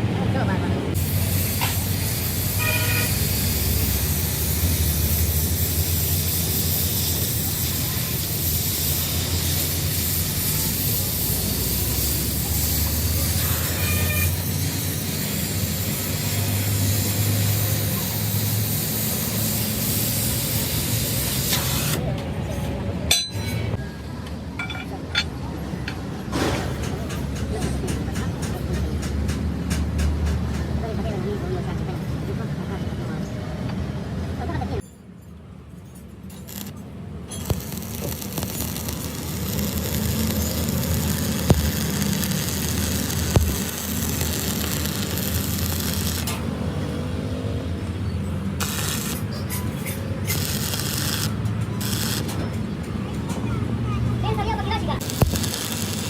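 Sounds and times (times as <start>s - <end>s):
machine hum and hiss: 0.9s - 22.0s, 36.3s - 46.8s, 48.6s - 49.3s, 50.3s - 52.4s, 55.0s - 56.0s.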